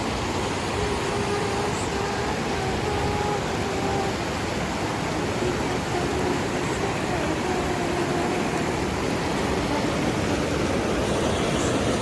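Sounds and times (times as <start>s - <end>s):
running water rushing: 0.0s - 12.0s.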